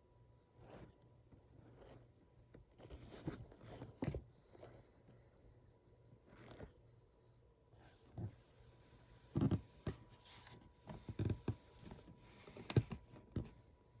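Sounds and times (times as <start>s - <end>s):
soft handling thumps and clicks: 9.2s - 13.7s.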